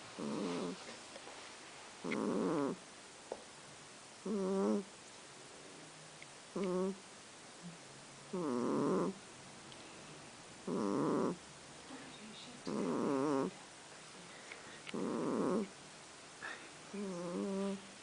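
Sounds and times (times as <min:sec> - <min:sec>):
kitten snoring: 0:00.0 - 0:00.9, 0:02.0 - 0:02.8, 0:04.2 - 0:04.9, 0:06.5 - 0:07.0, 0:07.6 - 0:09.2, 0:10.6 - 0:11.4, 0:12.6 - 0:13.6, 0:14.8 - 0:15.7, 0:16.4 - 0:17.9.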